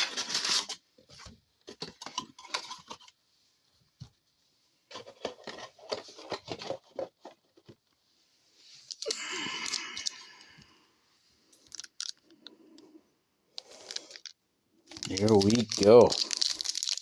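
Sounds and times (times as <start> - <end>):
packaging tearing: 14.9 - 17.0.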